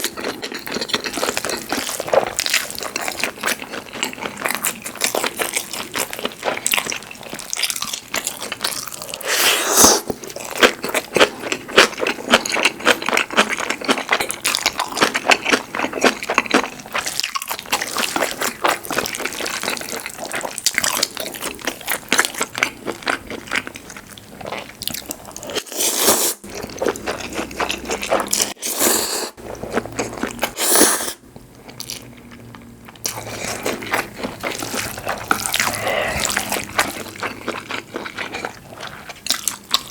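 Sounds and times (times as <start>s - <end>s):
wet chewing and biting: 31.7s - 39.9s.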